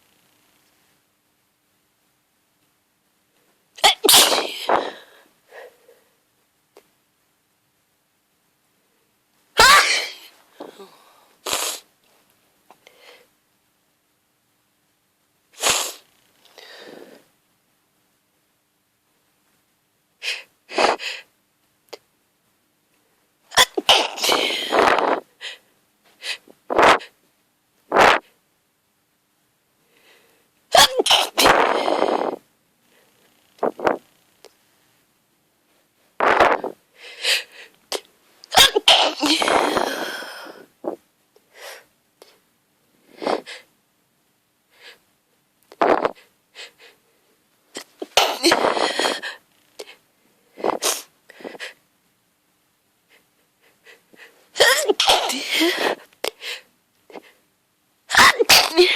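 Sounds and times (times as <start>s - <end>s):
woman sneezing: 3.8s - 5.0s, 9.6s - 11.8s, 23.5s - 25.2s, 30.7s - 32.4s, 38.5s - 41.0s, 47.8s - 49.4s, 54.6s - 56.1s, 58.1s - 58.9s.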